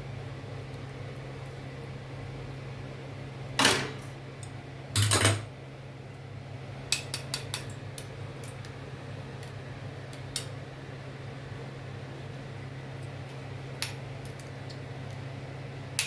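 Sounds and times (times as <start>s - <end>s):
utensils clattering against dishes: 3.6s - 4.2s, 5.0s - 5.5s.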